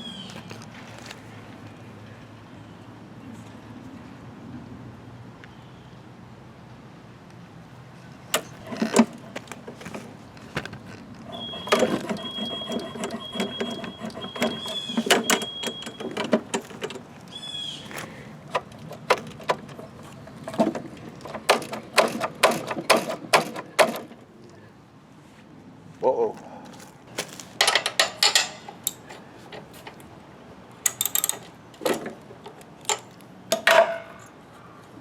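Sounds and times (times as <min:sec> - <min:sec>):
thin high squeak: 0:11.3 - 0:16.1
metal parts and tools clinking: 0:27.6 - 0:30.0, 0:30.8 - 0:34.4.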